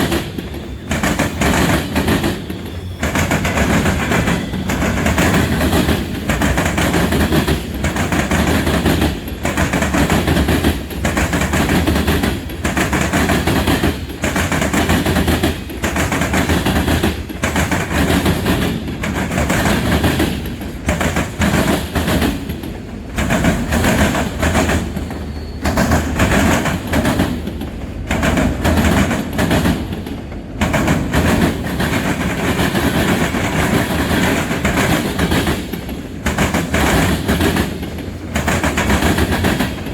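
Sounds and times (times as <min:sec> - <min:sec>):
freight train wheels rumbling: 0:00.0 - 0:39.9.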